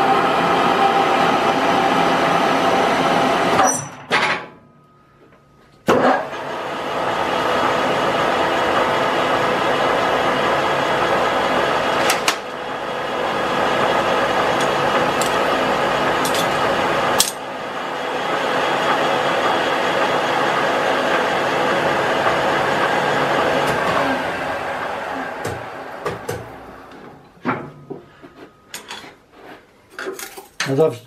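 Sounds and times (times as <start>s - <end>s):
metal lathe running with gear whine: 0.0s - 3.7s, 6.3s - 27.1s.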